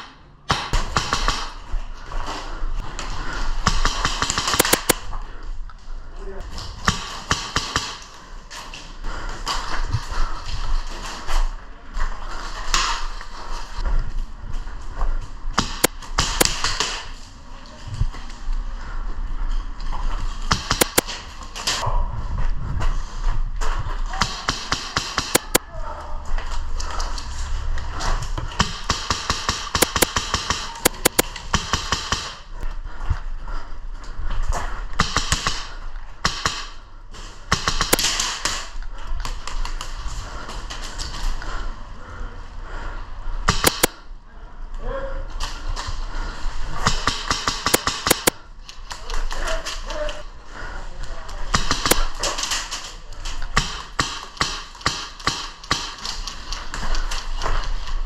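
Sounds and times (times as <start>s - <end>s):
airsoft guns firing bursts: 3.6s - 5.0s, 24.2s - 25.6s, 28.6s - 32.4s, 37.5s - 38.7s, 43.5s - 43.9s, 46.8s - 48.3s, 53.6s - 56.5s.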